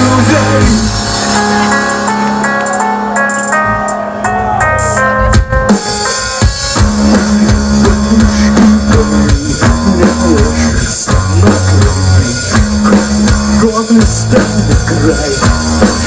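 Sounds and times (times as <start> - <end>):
rock band playing: 0.0 - 16.0.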